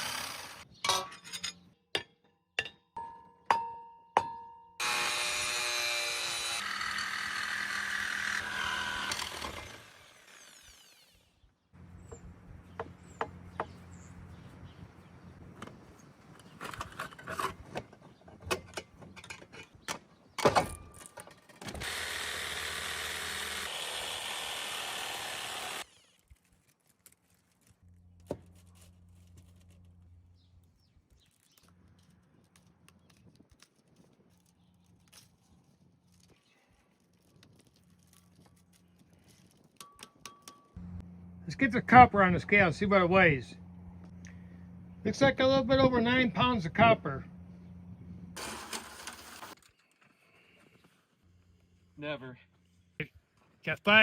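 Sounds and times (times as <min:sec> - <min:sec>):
power tool cutting metal: 0:00.0 - 0:00.6, 0:04.8 - 0:11.4, 0:21.8 - 0:26.2, 0:48.4 - 0:49.6.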